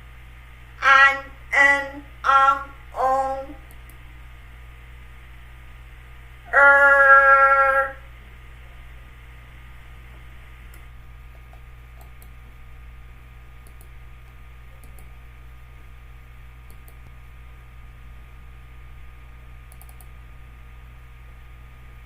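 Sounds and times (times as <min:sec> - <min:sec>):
steady low hum: 0:00.0 - 0:22.0
faint clicks: 0:13.6 - 0:15.1, 0:19.7 - 0:20.1.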